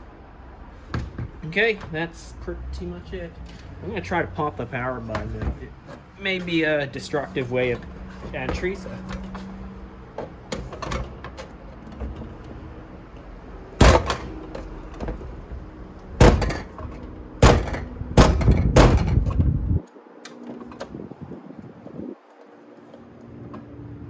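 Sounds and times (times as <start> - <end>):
sharp knocks on metal: 0.9 - 1.4, 13.8 - 14.3, 16.2 - 19.5.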